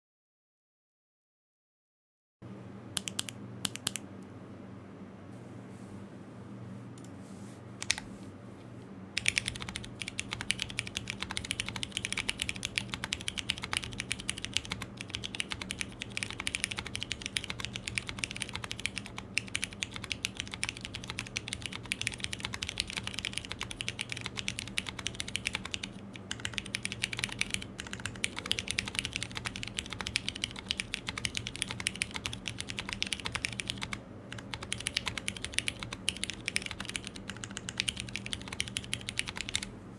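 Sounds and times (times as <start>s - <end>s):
mechanical keyboard typing: 3.0s - 4.0s, 7.8s - 8.0s, 9.2s - 39.7s.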